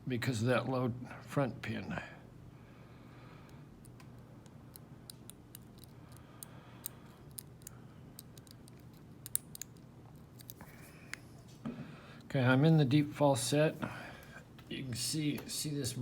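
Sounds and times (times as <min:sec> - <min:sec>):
lock pick clicking in padlock: 0:04.7 - 0:10.6.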